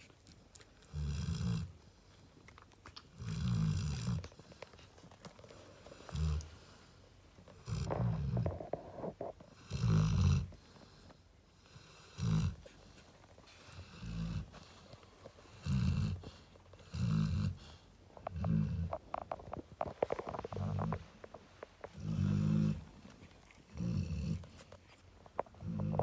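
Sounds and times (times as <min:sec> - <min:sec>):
dog snoring: 0:00.8 - 0:01.8, 0:03.2 - 0:04.6, 0:05.9 - 0:06.8, 0:07.5 - 0:13.0, 0:13.6 - 0:24.7, 0:25.6 - 0:26.0.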